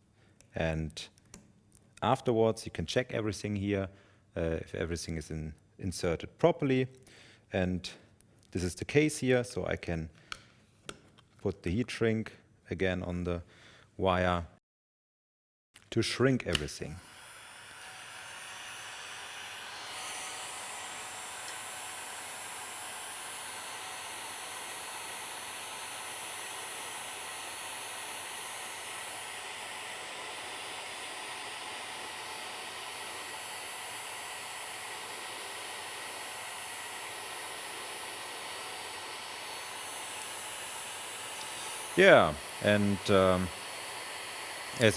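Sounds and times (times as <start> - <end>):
heat gun blowing: 16.4 - 44.9.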